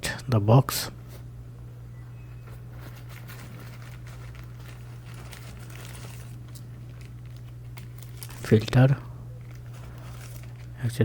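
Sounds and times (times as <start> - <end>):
steady low hum: 0.0 - 11.0
packaging rustling and crinkling: 2.4 - 11.0.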